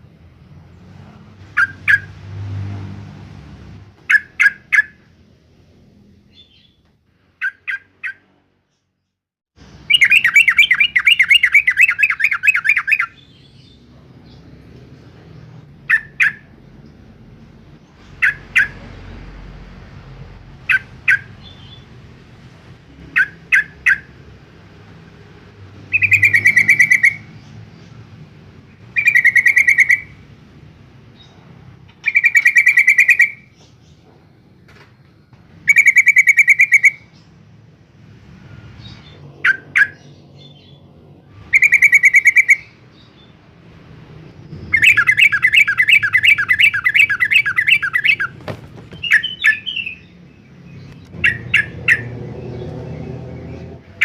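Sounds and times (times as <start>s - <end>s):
bird chattering: 1.6s - 2.1s, 4.0s - 5.1s, 9.9s - 14.4s, 15.8s - 17.0s, 17.9s - 18.9s, 20.6s - 21.9s, 23.0s - 24.2s, 25.9s - 27.6s, 28.8s - 30.2s, 31.2s - 33.6s, 35.7s - 37.2s, 41.4s - 43.3s, 44.4s - 52.2s
bird sharp call notes: 9.9s - 13.2s, 18.2s - 18.9s, 25.9s - 27.3s, 29.0s - 30.2s, 32.0s - 33.6s, 41.4s - 42.8s, 44.7s - 50.1s.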